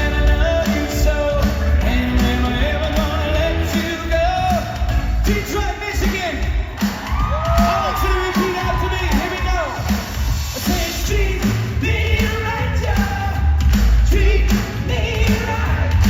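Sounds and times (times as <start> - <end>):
person singing: 0.0 - 6.4, 10.6 - 16.0
heavy bass beat: 0.0 - 16.0.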